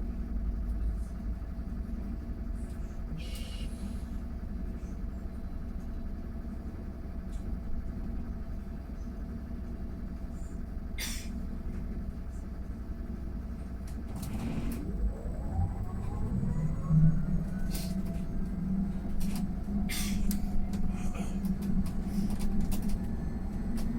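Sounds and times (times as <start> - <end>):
bus riding rumble: 0.0 - 23.9
electric motor whine: 14.1 - 19.8.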